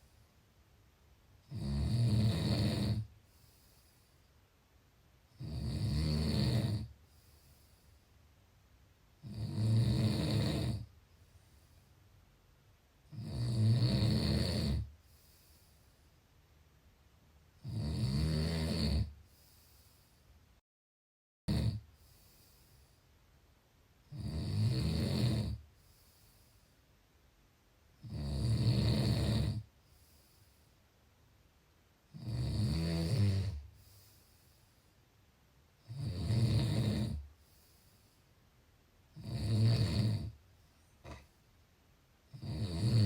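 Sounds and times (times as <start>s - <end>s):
person snoring: 1.4s - 3.1s, 5.4s - 7.0s, 9.2s - 10.9s, 13.1s - 15.7s, 17.6s - 19.2s, 21.5s - 22.8s, 24.1s - 25.6s, 28.0s - 29.7s, 32.1s - 34.2s, 35.8s - 37.2s, 39.2s - 40.4s, 42.3s - 43.0s
faint breathing: 3.2s - 4.7s, 7.0s - 8.3s, 11.1s - 12.1s, 14.9s - 16.3s, 19.2s - 20.5s, 21.9s - 23.3s, 25.6s - 27.0s, 29.8s - 31.0s, 33.6s - 35.2s, 37.2s - 38.5s.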